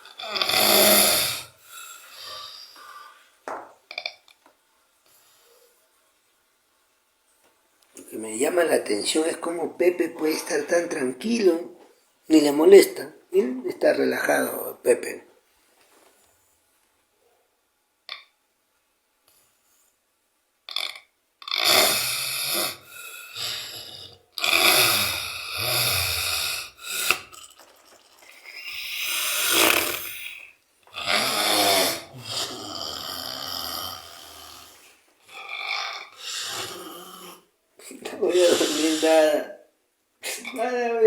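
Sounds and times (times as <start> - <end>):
man snoring loudly: 0.0 - 2.8, 21.5 - 27.6, 28.5 - 37.4.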